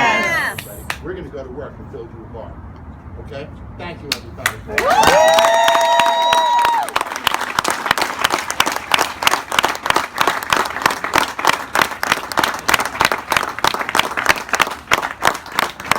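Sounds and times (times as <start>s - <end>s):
crowd applauding: 4.4s - 15.9s.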